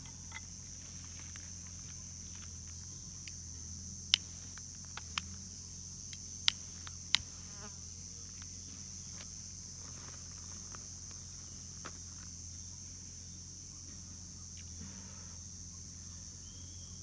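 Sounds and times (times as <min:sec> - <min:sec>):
wood snapping: 0:04.1 - 0:07.4.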